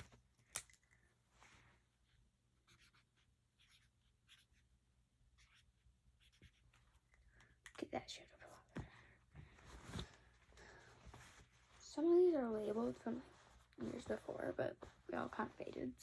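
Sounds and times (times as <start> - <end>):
marker scratching on label: 2.6 - 4.7, 5.4 - 6.7.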